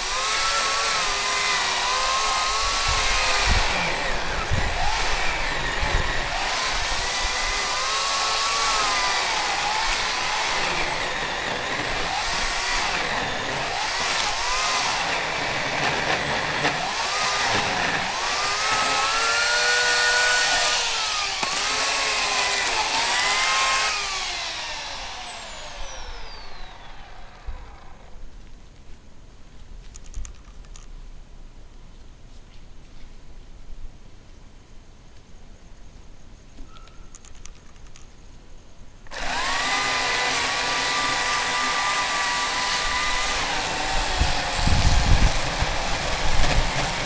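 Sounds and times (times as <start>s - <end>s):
electric chainsaw cutting wood: 0.0s - 28.2s, 39.1s - 47.0s.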